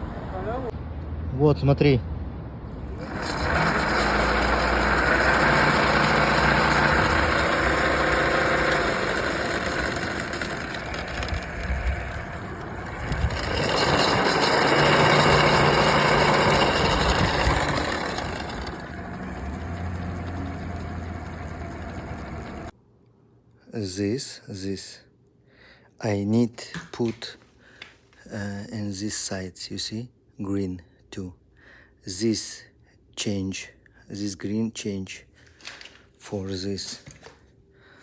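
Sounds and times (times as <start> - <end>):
vehicle engine running: 2.8 - 22.7.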